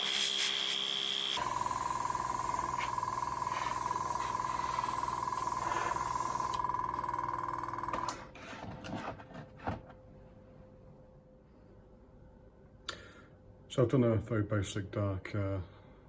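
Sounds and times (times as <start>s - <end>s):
airbrush hissing: 0.0s - 6.6s
compressor humming: 0.0s - 8.4s.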